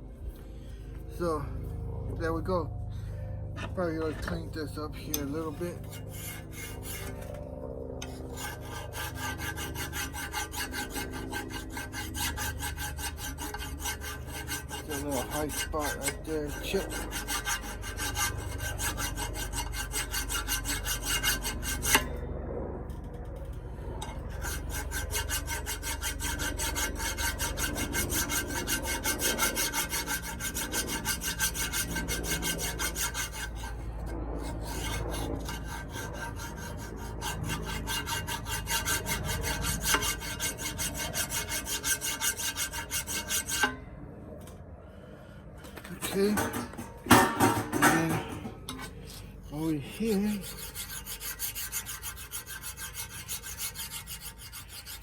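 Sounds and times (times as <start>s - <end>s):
hand file rasping on metal: 3.6s - 22.2s, 23.0s - 43.8s, 45.6s - 55.0s.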